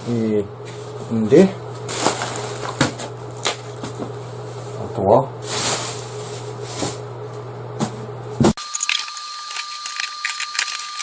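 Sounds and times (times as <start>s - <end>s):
gear and packaging rustling: 1.8s - 4.0s, 5.4s - 7.0s.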